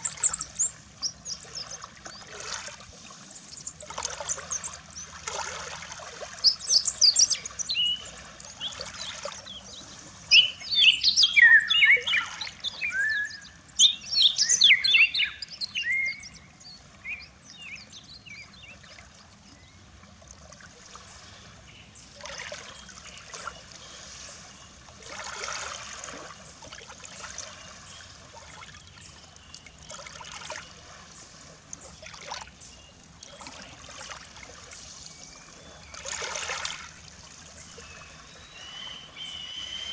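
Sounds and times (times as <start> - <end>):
birds chirping and singing: 0.0 - 2.3, 3.2 - 5.4, 6.4 - 9.7
small waves lapping: 0.0 - 39.9.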